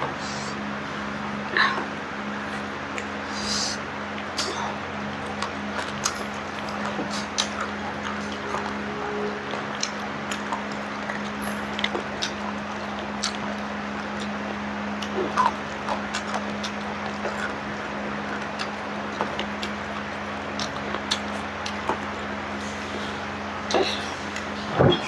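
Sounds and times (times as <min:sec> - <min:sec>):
steady low hum: 0:00.0 - 0:25.0
eating clicks and smacks: 0:02.8 - 0:08.8, 0:09.8 - 0:22.4.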